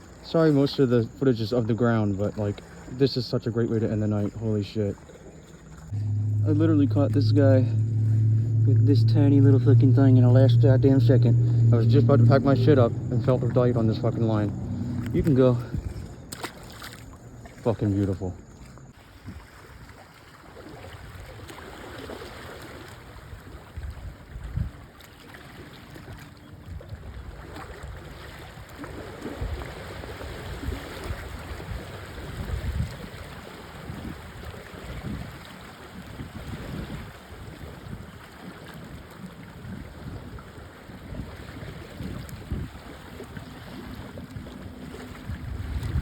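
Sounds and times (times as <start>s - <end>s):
water washing at shoreline: 0.0s - 46.0s
wind gusting on microphone: 6.0s - 16.4s, 39.6s - 46.0s.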